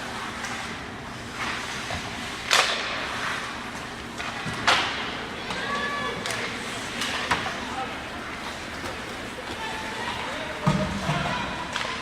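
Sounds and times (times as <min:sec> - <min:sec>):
sharp noises from ice hockey play: 0:00.0 - 0:12.0
arena crowd hubbub: 0:03.0 - 0:12.0.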